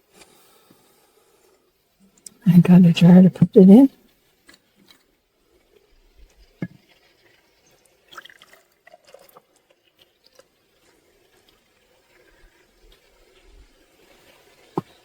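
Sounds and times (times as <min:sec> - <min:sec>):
small clinks and splashes: 0:06.6 - 0:10.9
liquid pouring and dripping: 0:06.6 - 0:11.4.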